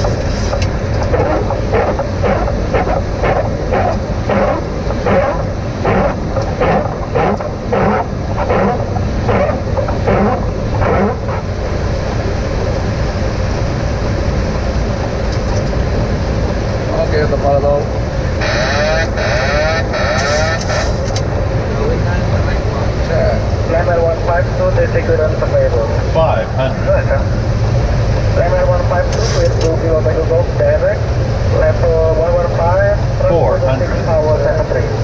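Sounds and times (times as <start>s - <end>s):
windshield wipers sweeping: 0.0s - 11.5s, 18.4s - 21.2s
low rush of engines and airflow: 0.0s - 35.0s.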